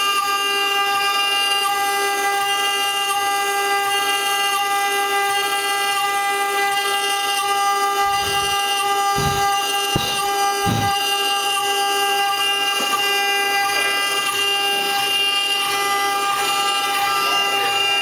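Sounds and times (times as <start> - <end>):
cnc router spindle whine: 0.0 - 18.0
low thuds: 8.0 - 11.0.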